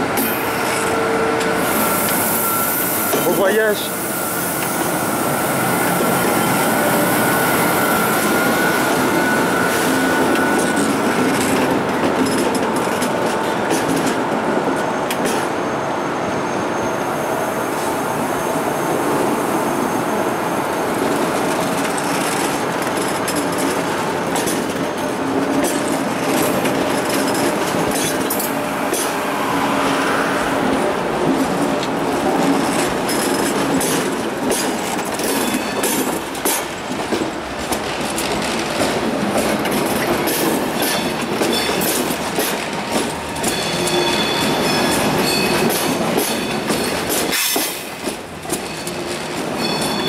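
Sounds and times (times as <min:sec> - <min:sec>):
train wheels rolling on rail: 0:00.0 - 0:50.0.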